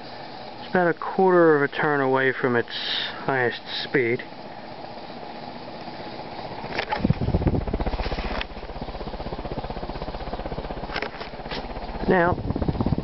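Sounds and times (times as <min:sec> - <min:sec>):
ceiling fan running: 0:00.0 - 0:13.0
fan clicks: 0:05.3 - 0:13.0.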